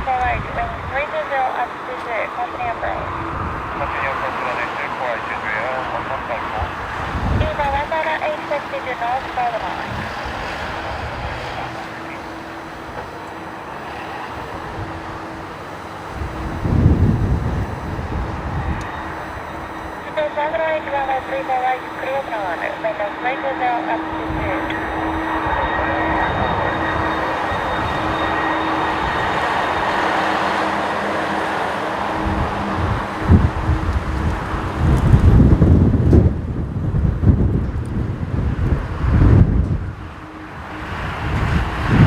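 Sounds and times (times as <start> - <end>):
jet airliner rushing: 0.0 - 42.0
wind buffeting microphone: 0.0 - 42.0
faint whine tones: 11.4 - 34.7, 39.5 - 41.8.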